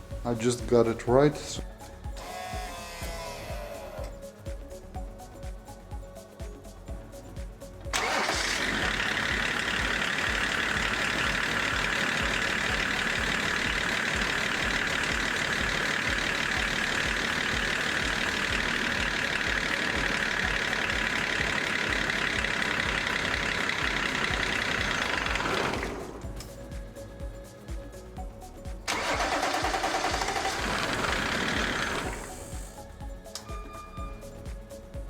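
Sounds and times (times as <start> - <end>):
engine cranking on starter: 0.3 - 4.2, 7.9 - 26.6, 28.9 - 32.8.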